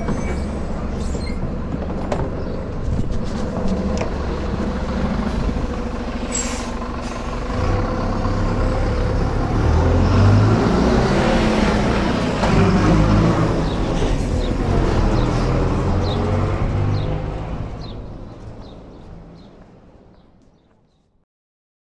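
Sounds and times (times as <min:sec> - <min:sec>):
driveshaft rumbling: 0:00.0 - 0:10.2
bus engine running: 0:00.0 - 0:20.6.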